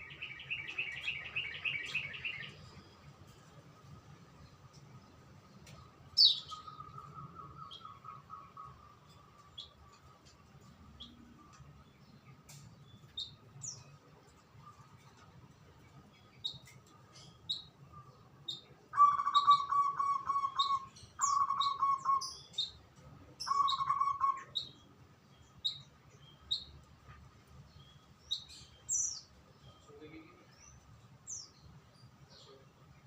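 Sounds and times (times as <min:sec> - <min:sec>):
songbirds chirping: 0:00.0 - 0:33.0
bird trills: 0:18.5 - 0:22.8, 0:23.4 - 0:24.8.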